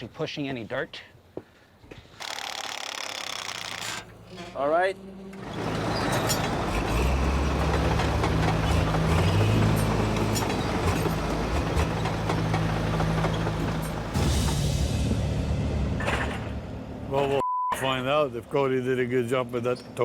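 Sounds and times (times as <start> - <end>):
bulldozer diesel engine running: 5.1 - 16.0.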